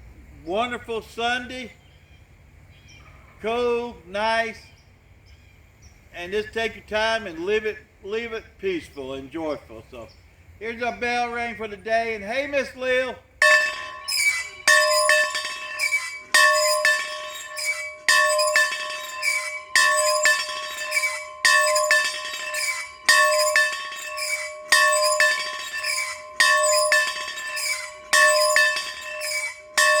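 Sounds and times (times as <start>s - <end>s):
bell ringing: 13.4s - 30.0s.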